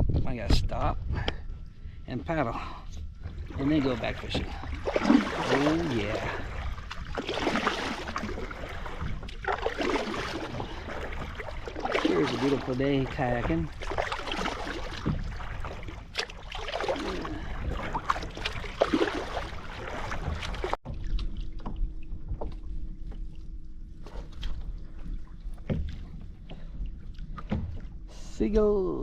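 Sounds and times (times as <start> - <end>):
paddle strokes splashing in water: 3.2 - 21.8.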